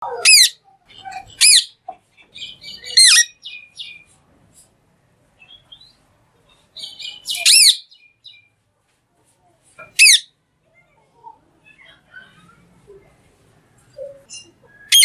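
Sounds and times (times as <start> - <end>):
parrot chattering: 0.0 - 4.0, 6.8 - 7.8, 9.8 - 10.3
parrot screeching: 0.2 - 0.6, 1.3 - 1.8, 3.0 - 3.3, 7.4 - 7.8, 10.0 - 10.3.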